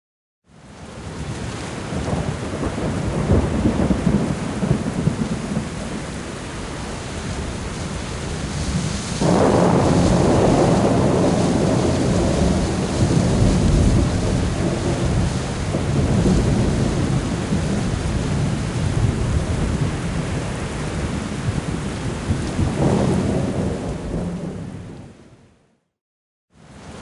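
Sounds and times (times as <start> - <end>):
steady rain: 0.5 - 25.4, 26.6 - 27.0
low rolling thunder: 0.8 - 25.2
loud thunderclap: 1.9 - 6.0, 8.3 - 25.1.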